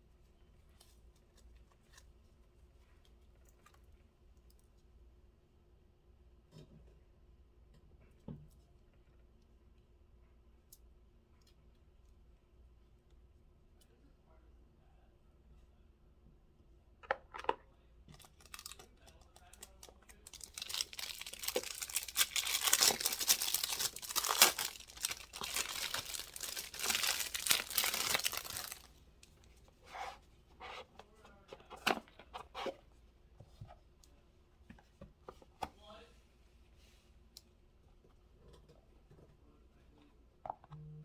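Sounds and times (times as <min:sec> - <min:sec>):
packaging tearing and crinkling: 0:18.1 - 0:18.9, 0:19.5 - 0:28.9.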